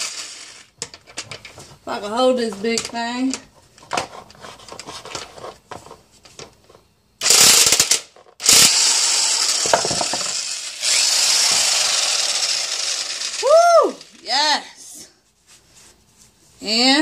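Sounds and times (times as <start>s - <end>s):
impact wrench hammering: 7.2s - 13.1s.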